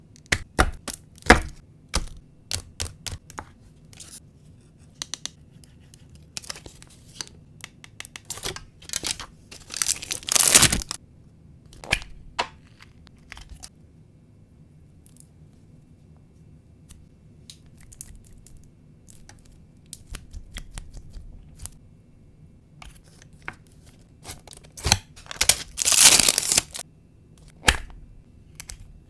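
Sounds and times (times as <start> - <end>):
packaging crinkling and tearing: 8.4 - 11.0, 24.4 - 26.8.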